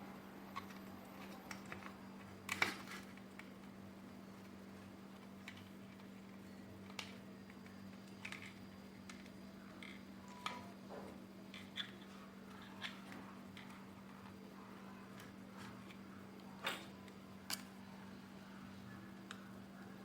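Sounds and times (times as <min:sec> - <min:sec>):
faint steady hum: 0:00.0 - 0:20.0
plastic parts clicking and tapping: 0:00.6 - 0:03.8, 0:05.2 - 0:14.4.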